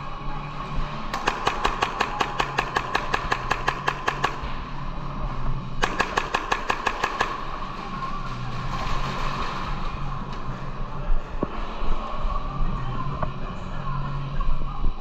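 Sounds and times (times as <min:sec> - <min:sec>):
steady hum: 0:00.0 - 0:15.0
airsoft gun full-auto bursts: 0:01.1 - 0:04.5, 0:05.8 - 0:07.5.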